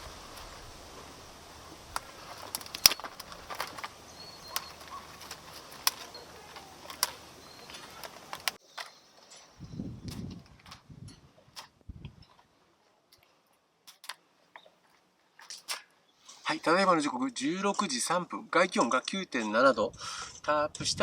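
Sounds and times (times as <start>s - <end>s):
steady light hiss: 0.0s - 20.7s
sharp clicks and knocks: 1.9s - 9.0s
faint high bird chirps: 4.0s - 5.3s, 5.9s - 10.3s.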